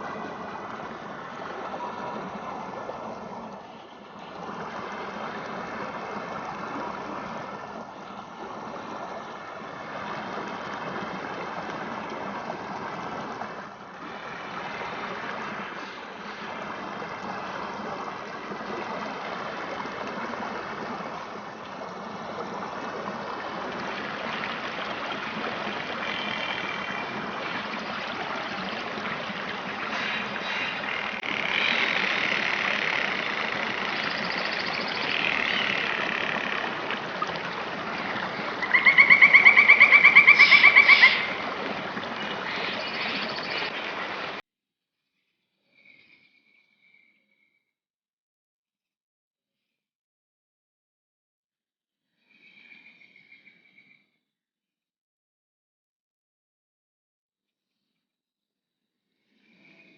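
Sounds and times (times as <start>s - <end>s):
rushing falling water: 4.0s - 44.4s.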